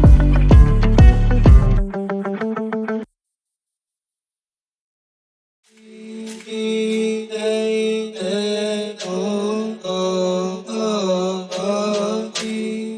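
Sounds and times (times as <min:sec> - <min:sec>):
background music with held notes: 0:00.0 - 0:02.6.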